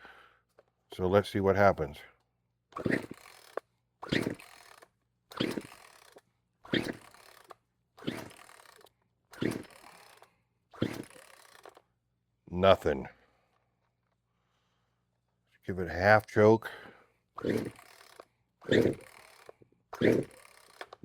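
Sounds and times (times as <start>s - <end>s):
chainsaw recoil starter whirring: 2.7s - 11.9s, 17.3s - 21.0s.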